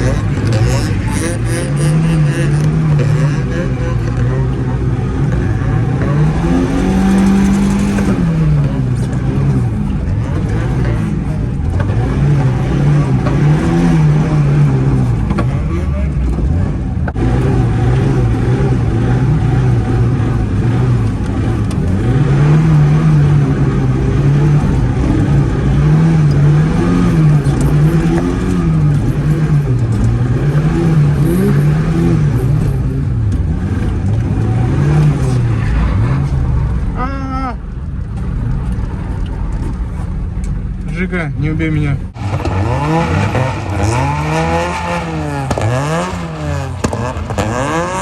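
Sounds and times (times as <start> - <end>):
car engine revving: 0.0 - 48.0.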